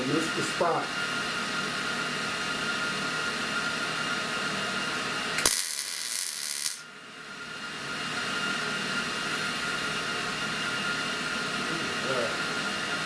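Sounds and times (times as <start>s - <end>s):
workshop hum: 0.0s - 13.0s
welder crackling hiss: 5.4s - 6.8s.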